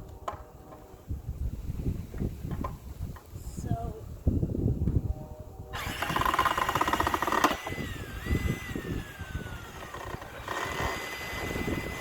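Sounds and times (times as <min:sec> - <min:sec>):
cordless drill motor whine: 0:05.8 - 0:12.0.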